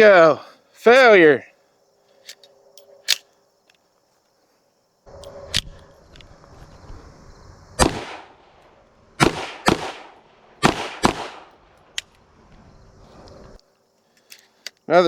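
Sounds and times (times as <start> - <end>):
pistol shots: 7.8 - 8.4, 9.2 - 11.5.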